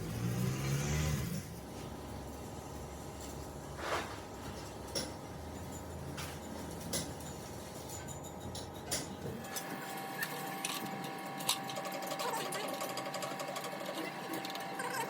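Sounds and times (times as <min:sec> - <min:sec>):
small machine running: 0:04.3 - 0:15.0.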